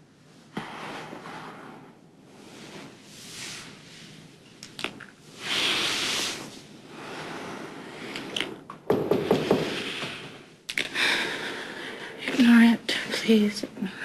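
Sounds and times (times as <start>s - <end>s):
breathing: 5.4s - 8.4s, 9.3s - 12.3s.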